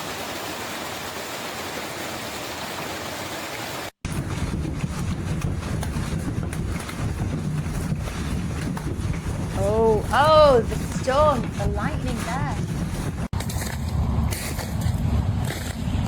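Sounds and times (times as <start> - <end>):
deep rumbling: 4.0 - 16.0.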